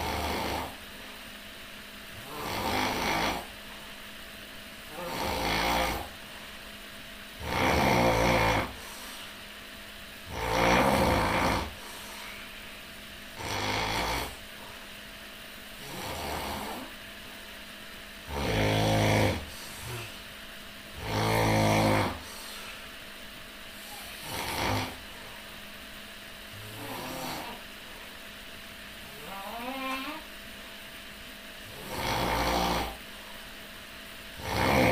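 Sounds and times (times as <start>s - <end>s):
loud rattling snoring: 0.0s - 0.9s, 2.1s - 3.6s, 4.9s - 6.2s, 7.4s - 9.0s, 10.2s - 12.0s, 13.3s - 14.7s, 15.8s - 17.1s, 18.2s - 20.3s, 20.9s - 22.6s, 23.8s - 25.2s, 26.4s - 27.7s, 29.1s - 30.3s, 31.6s - 33.0s, 34.3s - 34.9s.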